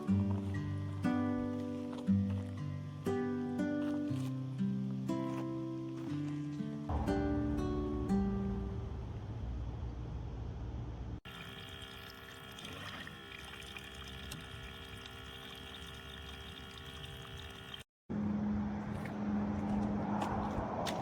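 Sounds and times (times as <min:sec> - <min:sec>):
pump whine: 0:11.2 - 0:17.9
water running from tap: 0:11.3 - 0:17.9.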